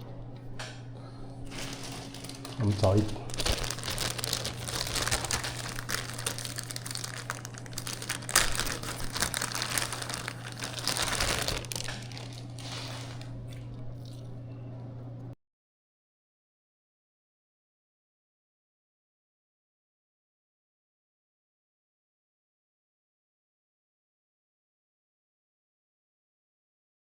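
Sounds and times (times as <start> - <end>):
steady low hum: 0.0 - 15.4
plastic packaging crinkling: 1.4 - 14.3.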